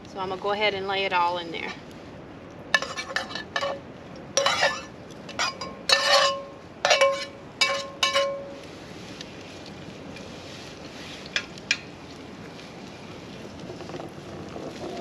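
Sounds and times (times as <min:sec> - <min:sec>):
metal utensil clinking on cookware: 0:02.8 - 0:03.8, 0:04.4 - 0:08.6.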